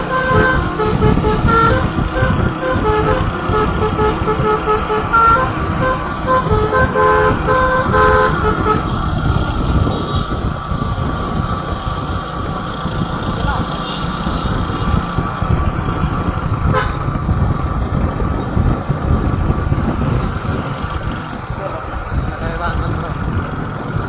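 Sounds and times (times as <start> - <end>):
musical bus horn tooting: 0.0 - 10.6, 15.4 - 17.2
engine and traffic rumble: 0.0 - 24.0.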